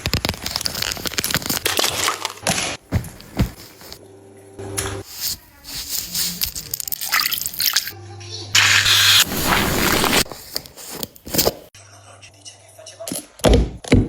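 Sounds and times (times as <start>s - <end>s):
crinkling and crackling: 0.0s - 4.0s, 5.1s - 7.9s.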